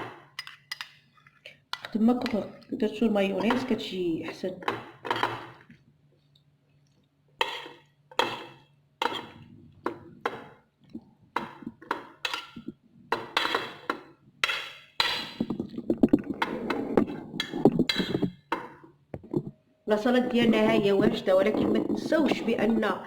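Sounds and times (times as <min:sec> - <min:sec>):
utensil scraping against a bowl: 0:07.4 - 0:09.4.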